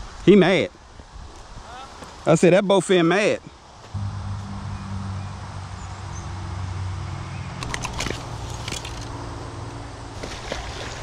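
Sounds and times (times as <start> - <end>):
engine humming: 4.0 - 10.3.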